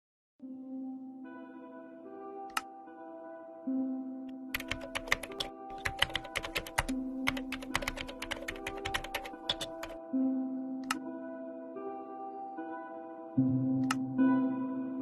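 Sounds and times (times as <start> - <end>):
soft music with held tones: 0.4 - 15.0
keyboard typing clicks: 4.5 - 10.0.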